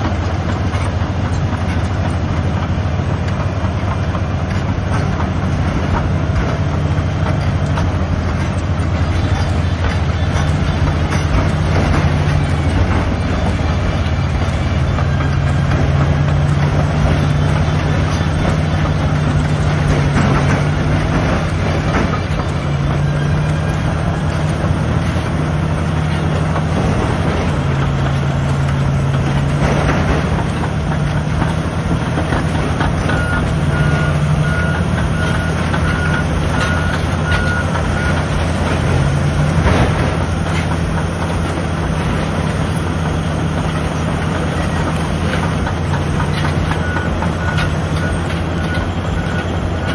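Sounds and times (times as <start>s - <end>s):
heavy diesel engines under load: 0.0s - 49.9s
steel tracks clanking: 0.0s - 49.9s
reversing alarm beeping: 32.1s - 38.9s, 46.4s - 49.9s.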